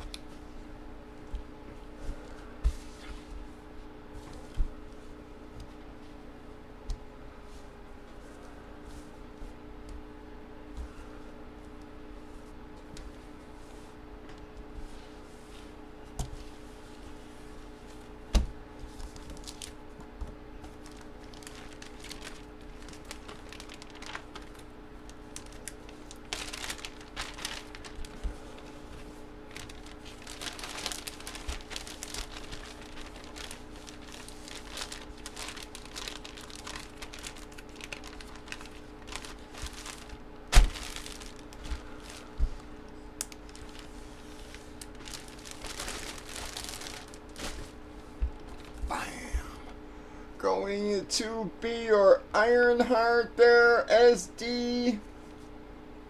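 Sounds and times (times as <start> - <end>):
plastic packaging rustling and crinkling: 0.0 - 0.4, 18.8 - 49.0.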